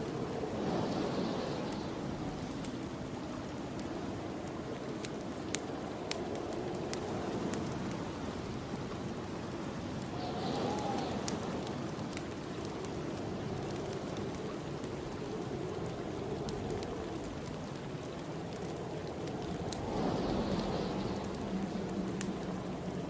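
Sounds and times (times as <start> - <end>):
snowstorm wind blowing: 0.0 - 23.0
wood fire crackling: 0.0 - 23.0.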